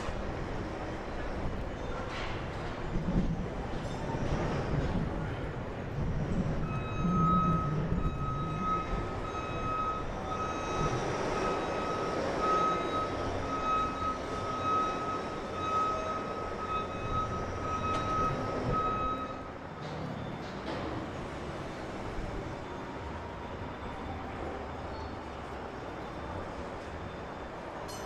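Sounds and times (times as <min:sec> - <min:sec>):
traffic and city noise: 0:00.0 - 0:28.0
high-pitched warning alarm beeping: 0:06.6 - 0:20.7.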